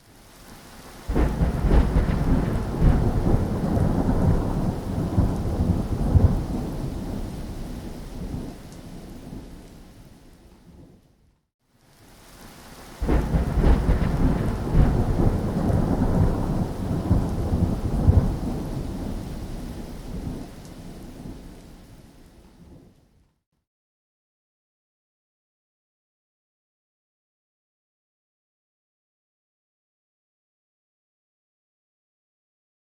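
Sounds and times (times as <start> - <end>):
rain: 0.0 - 23.2
thunder rolling: 1.1 - 9.6, 13.0 - 21.6.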